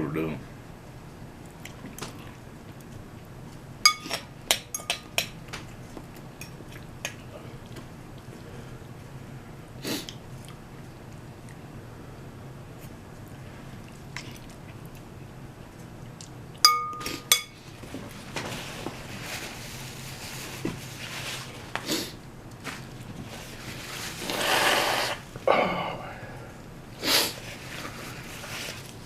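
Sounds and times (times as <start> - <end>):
utensil clinking against dish: 3.8 - 5.4, 16.6 - 17.6
person sniffing: 9.8 - 10.1, 21.8 - 22.2, 24.2 - 25.9, 27.0 - 27.4.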